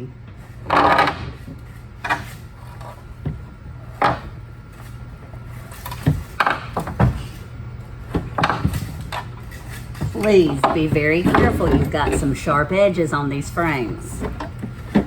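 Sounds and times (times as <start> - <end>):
knocks and clunks of parts: 0.3 - 4.4, 5.7 - 7.4, 8.1 - 12.5.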